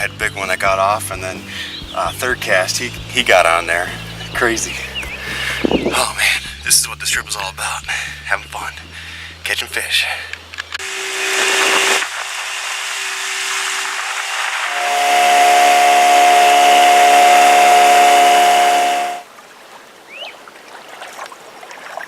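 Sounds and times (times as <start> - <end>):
rushing wind and water: 4.1 - 6.2.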